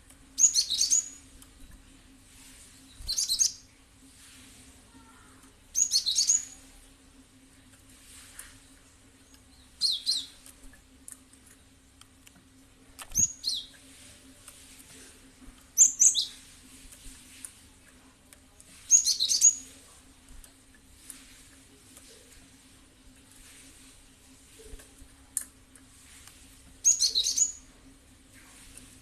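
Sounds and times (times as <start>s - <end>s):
faint steady hum: 0.0s - 29.0s
bird chirping: 0.4s - 1.2s, 2.9s - 3.6s, 5.8s - 6.6s, 9.3s - 10.4s, 18.9s - 19.7s, 26.8s - 27.6s.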